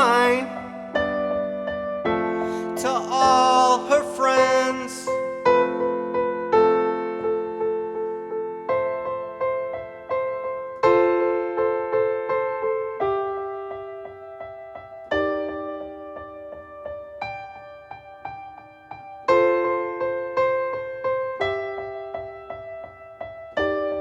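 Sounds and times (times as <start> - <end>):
keyboard playing chords: 0.0 - 11.6.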